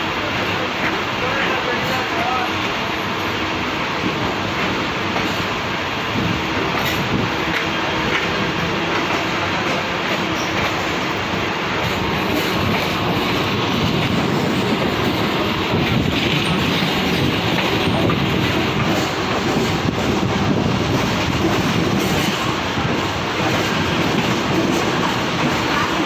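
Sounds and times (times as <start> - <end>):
train wheels rumbling on rails: 0.0 - 26.0.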